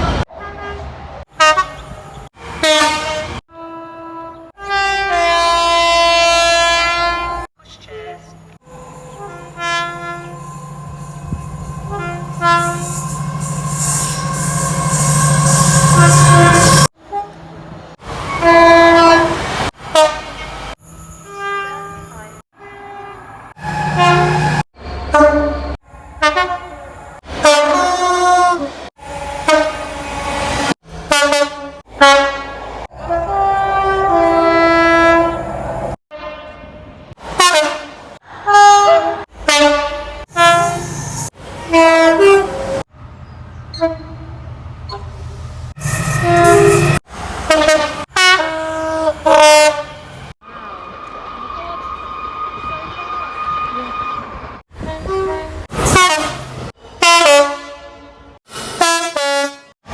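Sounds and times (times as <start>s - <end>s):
train horn blasts: 0.4s - 7.5s, 8.6s - 17.5s, 18.1s - 20.4s, 21.2s - 42.9s, 43.7s - 45.1s, 45.7s - 50.4s, 52.6s - 59.8s.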